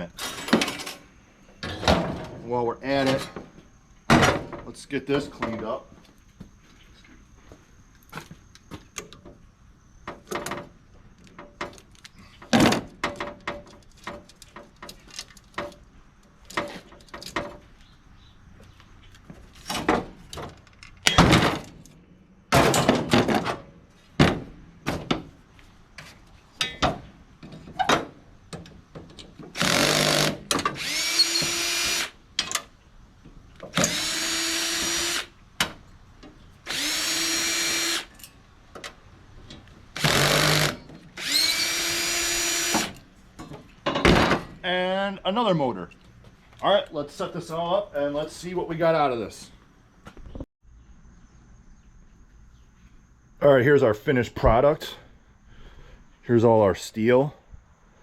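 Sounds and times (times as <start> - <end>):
clanks of parts and screws: 11.2 - 15.8
power drill whining: 29.6 - 32.2, 33.7 - 35.3, 36.7 - 38.1, 40.0 - 43.0.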